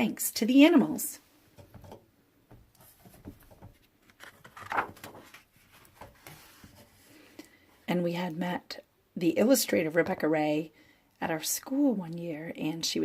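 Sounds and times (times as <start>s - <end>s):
paper pages rustling: 2.8s - 7.2s.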